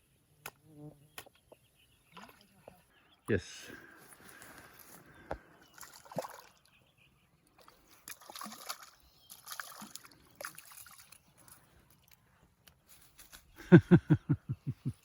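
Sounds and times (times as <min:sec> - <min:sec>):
water sloshing and trickling: 0:02.0 - 0:02.9, 0:04.3 - 0:13.3.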